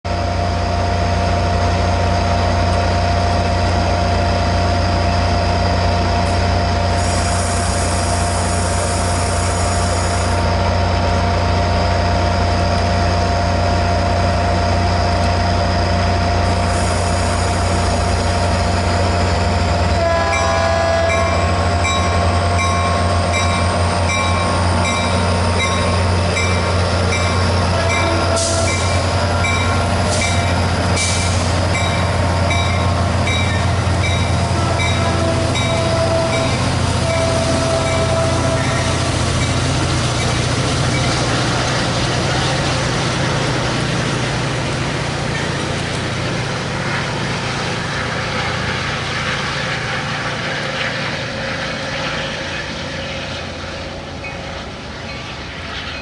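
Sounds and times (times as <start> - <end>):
diesel locomotive rumble: 0.0 - 56.0
locomotive whine: 0.1 - 56.0
high hiss: 6.9 - 10.4.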